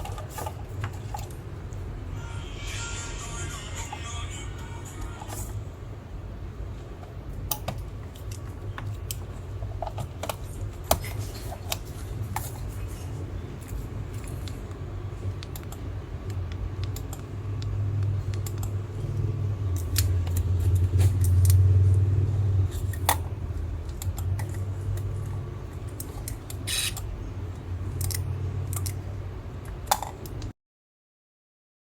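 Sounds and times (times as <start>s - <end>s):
low hum: 1.5s - 7.1s.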